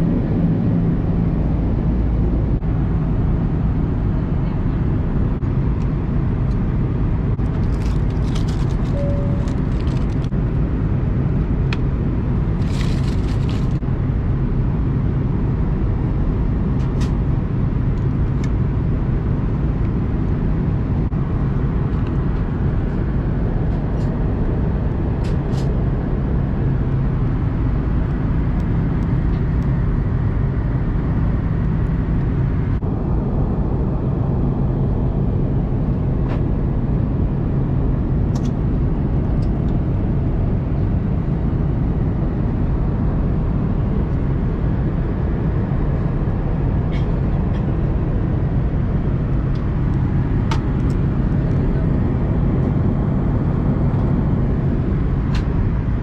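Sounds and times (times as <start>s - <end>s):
airplane cabin roar: 0.0s - 56.0s
faint rustles and clicks: 7.4s - 10.3s, 12.6s - 13.8s
faint beep: 8.9s - 9.4s.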